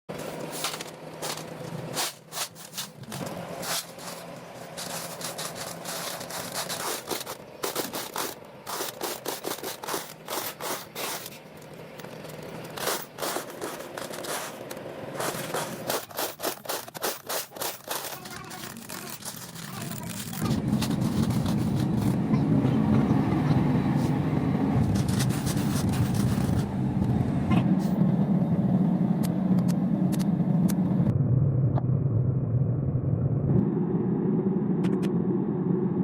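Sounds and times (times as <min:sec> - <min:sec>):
irregular scraping: 0:00.2 - 0:22.2, 0:24.8 - 0:26.7.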